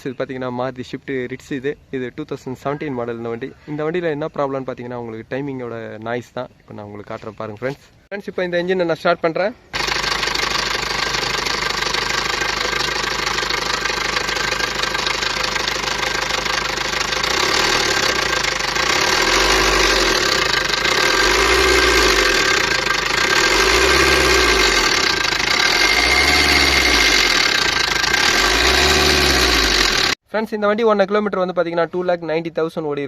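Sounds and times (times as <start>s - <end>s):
car engine running: 9.8s - 30.2s.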